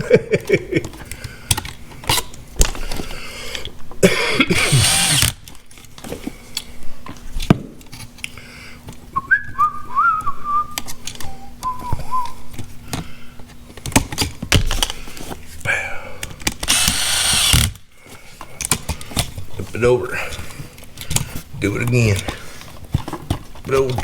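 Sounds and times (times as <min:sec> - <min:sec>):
power tool whir: 0:04.5 - 0:05.5, 0:16.6 - 0:17.8
hand tools clicking and knocking: 0:04.5 - 0:05.6
man whistling: 0:09.2 - 0:12.5.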